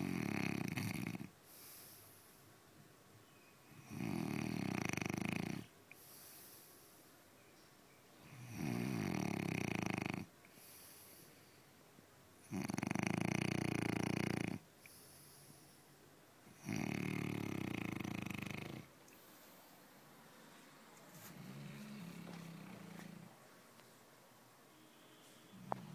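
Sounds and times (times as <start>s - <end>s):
quiet breathing: 1.2s - 2.6s, 5.6s - 7.6s, 10.2s - 12.0s, 14.6s - 25.9s
person snoring: 16.6s - 18.9s.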